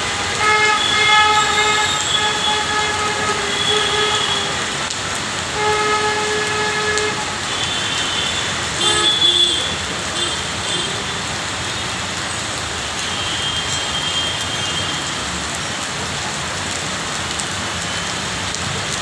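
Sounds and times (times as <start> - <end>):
long horn blasts: 0.0 - 4.8, 5.5 - 9.8
heavy rain hissing: 0.0 - 19.0.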